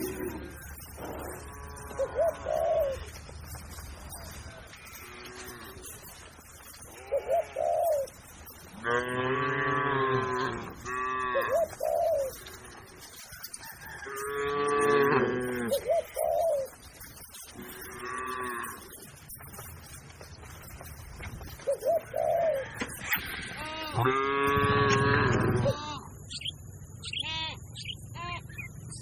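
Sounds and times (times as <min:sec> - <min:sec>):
cattle mooing: 0:00.0 - 0:02.5, 0:04.6 - 0:08.1, 0:08.7 - 0:13.2, 0:14.0 - 0:16.2, 0:17.5 - 0:19.0, 0:23.1 - 0:26.1
doves cooing: 0:00.0 - 0:29.0.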